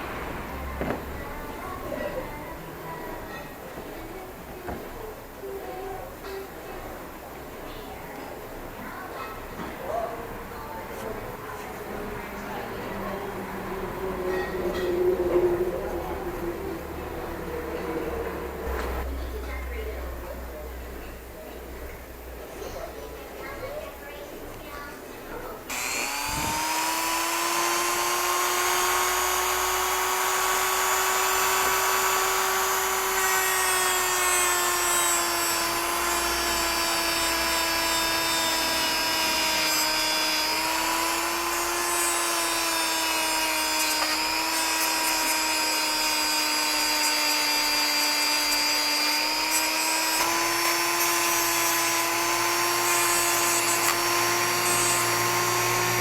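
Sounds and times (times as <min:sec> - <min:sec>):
power tool motor whining: 0:25.7 - 0:56.0.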